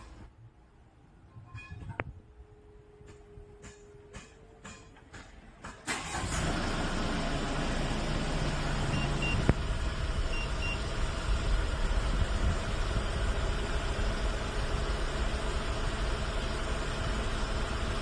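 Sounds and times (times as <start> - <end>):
diesel engine idling: 5.8 - 18.0.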